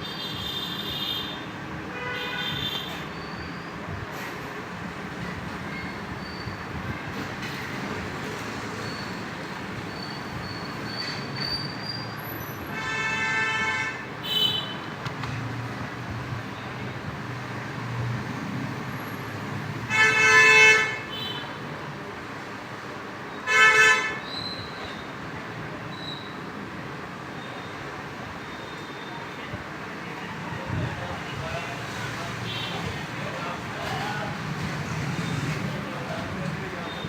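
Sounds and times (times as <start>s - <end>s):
vehicle horns honking: 0.0s - 3.4s, 12.7s - 14.9s, 19.9s - 21.6s, 23.4s - 24.6s
traffic noise: 0.0s - 37.0s.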